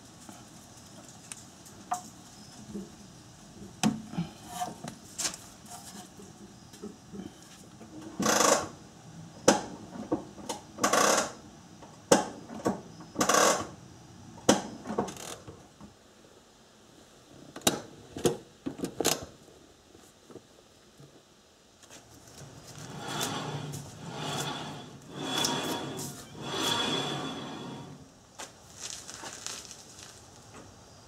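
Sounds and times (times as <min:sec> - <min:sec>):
metal parts scraping: 0:22.4 - 0:28.0.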